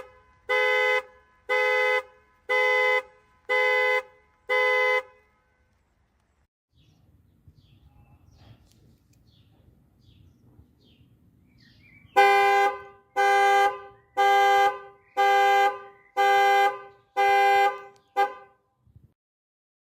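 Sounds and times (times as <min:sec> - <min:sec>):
car horn honking: 0:00.0 - 0:05.8, 0:12.1 - 0:18.6.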